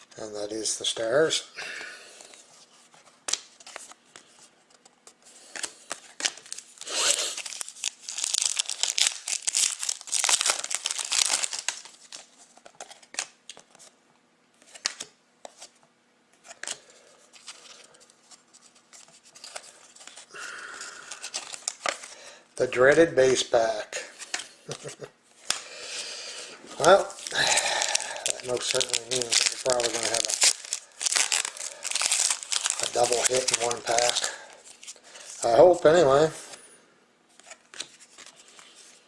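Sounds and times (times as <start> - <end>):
wrapper tearing and crinkling: 6.1 - 13.3, 19.4 - 22.1, 26.7 - 35.8.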